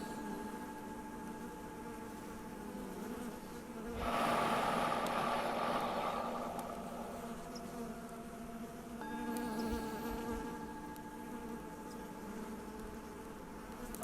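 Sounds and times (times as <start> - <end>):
bees buzzing: 1.8 - 14.0
rushing whoosh: 4.0 - 7.8
singing bowl ringing: 6.6 - 12.2.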